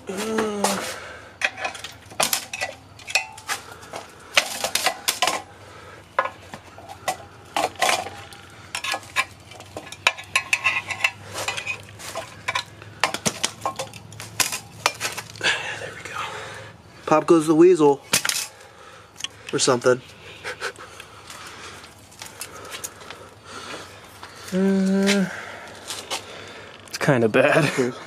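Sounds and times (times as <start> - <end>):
metal tools and bolts clinking: 0.6 - 5.5, 6.2 - 15.4, 17.8 - 18.6.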